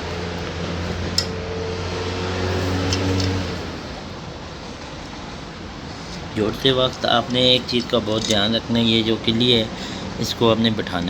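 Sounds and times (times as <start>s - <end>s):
low vehicle engine hum: 0.0s - 11.0s
light metallic clicks: 0.4s - 1.4s, 2.8s - 3.6s, 6.9s - 8.7s.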